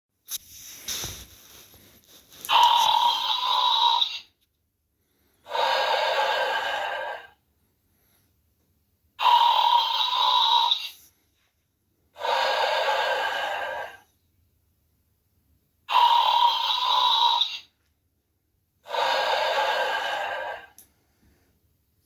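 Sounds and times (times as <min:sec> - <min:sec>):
toy dog snoring: 0:02.5 - 0:04.3, 0:05.4 - 0:07.4, 0:09.2 - 0:11.0, 0:12.2 - 0:14.1, 0:15.9 - 0:17.7, 0:18.8 - 0:20.8.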